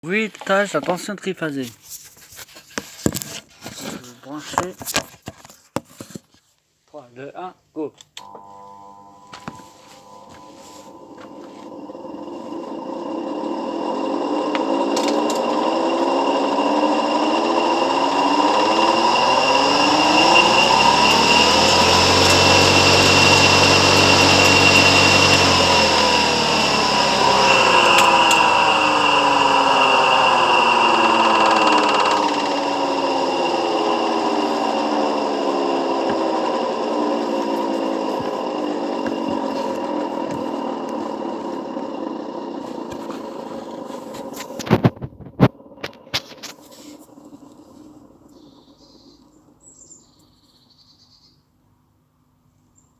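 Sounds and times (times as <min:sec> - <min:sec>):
electric motor whining: 0:08.2 - 0:48.7
deeper hum: 0:10.0 - 0:41.8.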